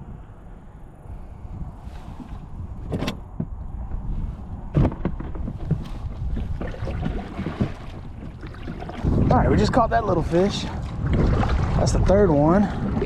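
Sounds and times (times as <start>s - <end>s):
wind rumbling on microphone: 0.0s - 13.0s
knocks and thumps on kayak: 4.7s - 9.5s, 10.8s - 12.0s, 12.7s - 13.0s.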